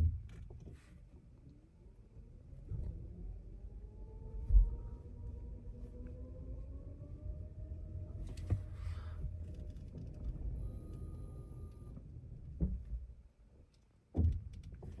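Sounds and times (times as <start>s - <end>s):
low rumble inside car cabin: 0.0s - 15.0s.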